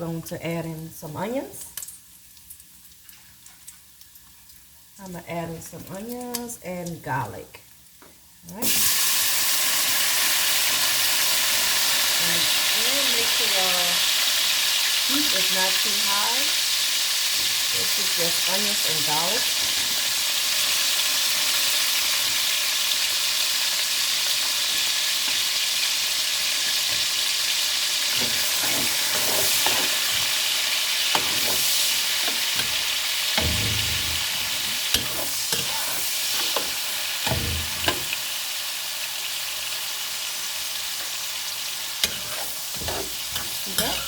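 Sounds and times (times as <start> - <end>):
onions sizzling in a pot: 0.0 - 44.0
utensil scraping and knocking pot: 31.1 - 38.2, 42.0 - 44.0.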